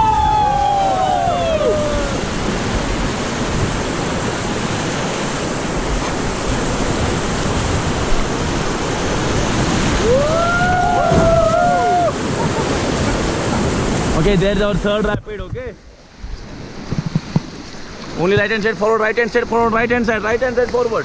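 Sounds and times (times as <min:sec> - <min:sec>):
river white water rushing: 0:00.0 - 0:14.9
wind buffeting microphone: 0:00.0 - 0:18.6.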